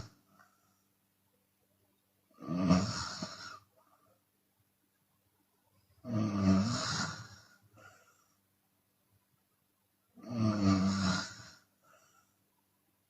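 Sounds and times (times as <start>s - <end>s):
woman snoring: 2.4s - 3.6s, 6.0s - 7.5s, 10.2s - 11.7s.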